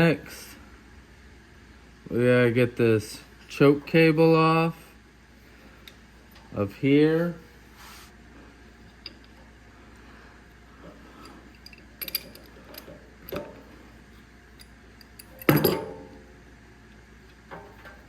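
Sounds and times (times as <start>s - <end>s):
small clicks of tools and parts: 11.2s - 13.5s
loud metallic clank with ring: 15.4s - 16.2s.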